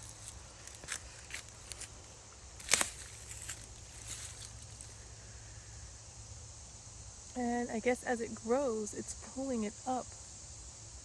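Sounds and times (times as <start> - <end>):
small rustles and clicks: 0.0 - 5.0
insects chirring: 0.0 - 11.0.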